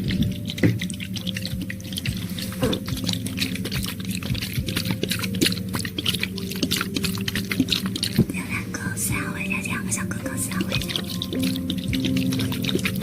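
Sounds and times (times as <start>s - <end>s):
wet sticky clicks and squelches: 0.0s - 8.4s, 10.3s - 13.0s.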